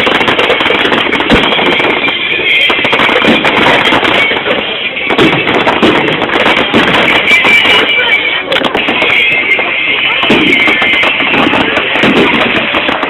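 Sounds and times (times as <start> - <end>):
fireworks bangs and crackles: 0.0 - 13.0
fireworks display music: 0.0 - 13.0.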